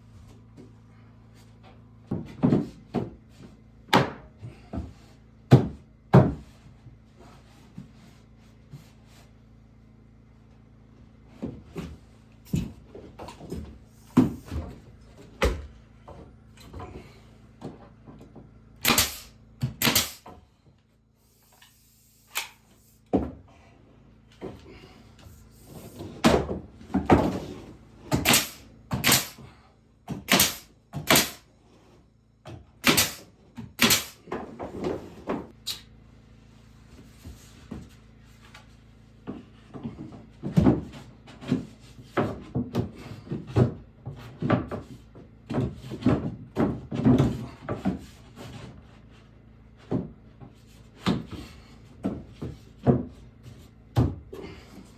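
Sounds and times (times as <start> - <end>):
wooden knocks and thuds: 2.1 - 6.6, 26.0 - 29.3, 39.2 - 49.0, 49.8 - 54.9.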